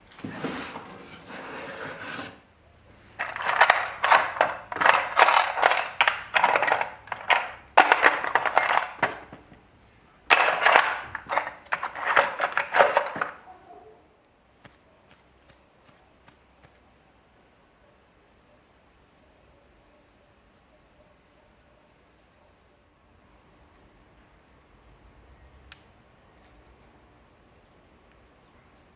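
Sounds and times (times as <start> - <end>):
metal parts clattering on work surface: 3.2 - 9.6, 10.3 - 13.5
faint light ticks: 25.7 - 25.9.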